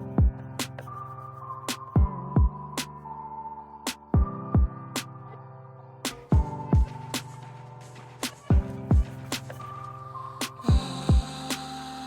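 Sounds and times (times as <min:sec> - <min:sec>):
kick drums: 0:00.1 - 0:00.4, 0:02.0 - 0:02.6, 0:04.2 - 0:04.7, 0:06.2 - 0:07.0, 0:08.5 - 0:09.2, 0:10.7 - 0:11.3
snare hits: 0:07.0 - 0:08.6.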